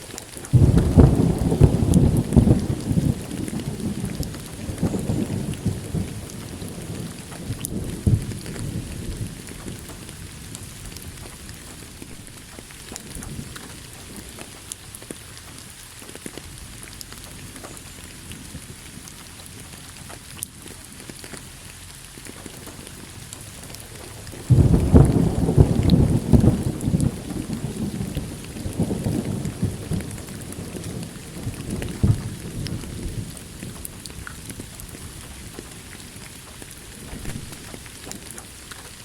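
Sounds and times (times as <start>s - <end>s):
steady rain falling: 0.0s - 39.0s
sharp thunder crack: 0.5s - 9.8s, 24.4s - 33.4s, 37.1s - 37.8s
thunder rumbling: 0.5s - 15.8s, 22.1s - 38.6s.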